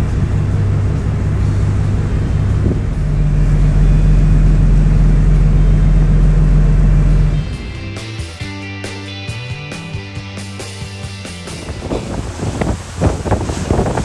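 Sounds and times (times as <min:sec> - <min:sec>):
large engine humming: 0:00.0 - 0:08.6.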